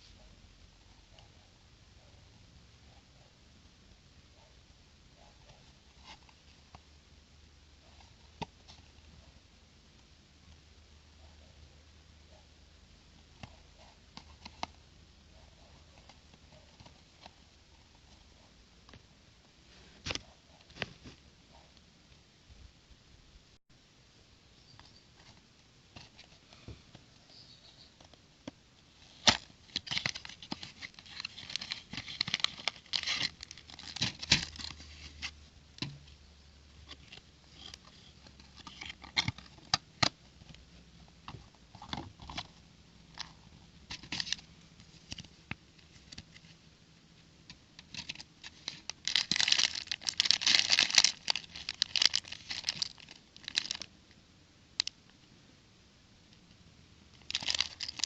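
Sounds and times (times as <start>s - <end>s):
plastic packaging crinkling: 28.9s - 35.3s, 43.9s - 44.5s, 47.8s - 53.9s, 57.1s - 58.0s.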